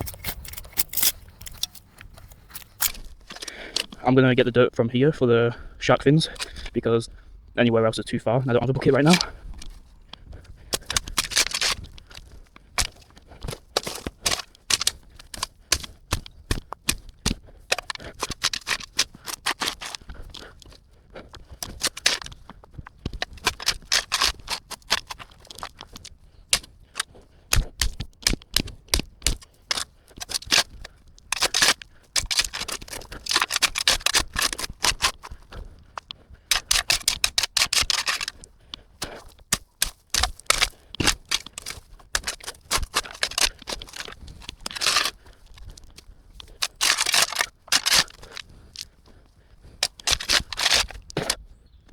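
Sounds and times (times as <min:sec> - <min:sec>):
shovel digging into soil: 0:00.0 - 0:04.0, 0:08.6 - 0:09.8, 0:10.4 - 0:20.8, 0:21.5 - 0:22.5, 0:23.1 - 0:48.9, 0:49.8 - 0:51.4.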